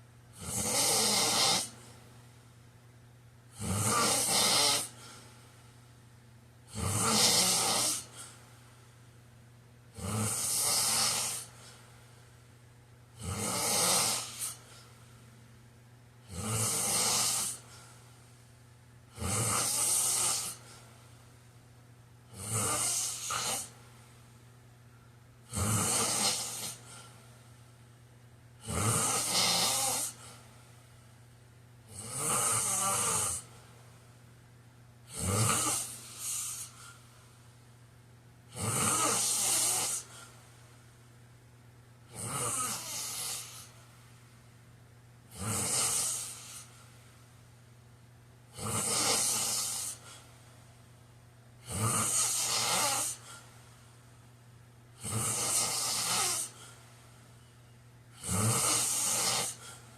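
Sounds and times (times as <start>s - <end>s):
man snoring: 0.4s - 1.8s, 3.5s - 5.0s, 6.7s - 8.3s, 9.9s - 11.6s, 13.2s - 14.6s, 16.2s - 17.7s, 19.1s - 20.7s, 22.3s - 23.8s, 25.5s - 27.0s, 28.6s - 30.4s, 31.9s - 33.5s, 35.1s - 36.9s, 38.5s - 40.3s, 42.1s - 43.8s, 45.3s - 46.7s, 48.5s - 50.2s, 51.6s - 53.4s, 55.0s - 56.7s, 58.2s - 59.8s.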